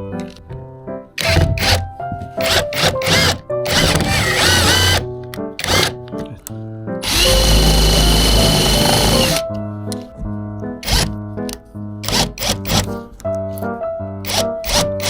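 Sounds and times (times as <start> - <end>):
background music: 0.0 - 15.0
electric drill running: 1.2 - 1.8, 2.4 - 5.0, 5.6 - 5.9, 7.0 - 9.4, 12.0 - 12.9, 14.3 - 14.9.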